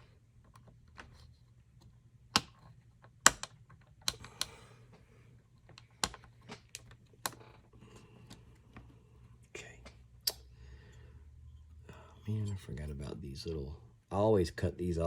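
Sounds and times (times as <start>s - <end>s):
small plastic parts clicking: 1.8s - 4.6s, 5.6s - 8.5s.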